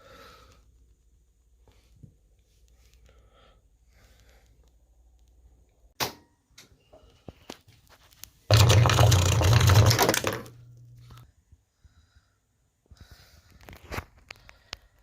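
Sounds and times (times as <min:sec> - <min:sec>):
drain pump humming: 0:08.5 - 0:11.2.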